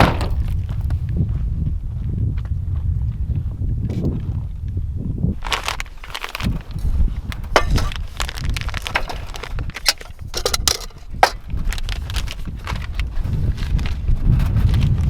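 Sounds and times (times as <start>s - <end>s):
low rumble of wind: 0.0s - 15.0s
sharp clicks and knocks: 7.3s - 11.8s.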